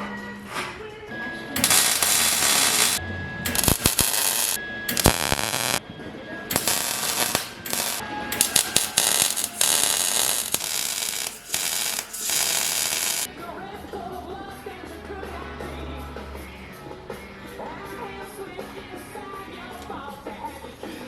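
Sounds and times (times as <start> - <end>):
arc welding crackle: 1.6 - 5.8, 6.5 - 13.3.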